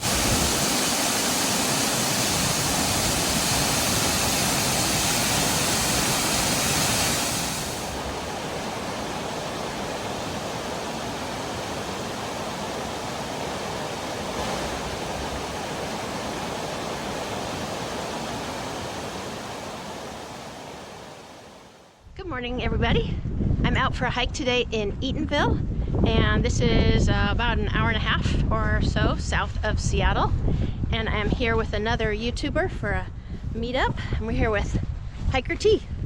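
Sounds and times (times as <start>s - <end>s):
waterfall rushing: 0.0s - 21.9s.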